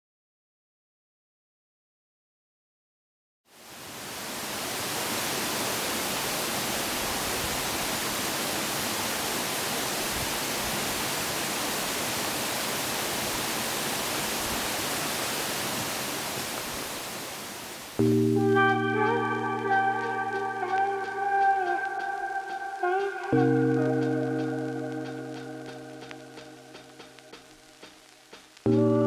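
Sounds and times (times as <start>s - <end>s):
running water rushing: 3.5s - 18.4s
sustained music chord: 18.0s - 27.2s, 28.7s - 29.0s.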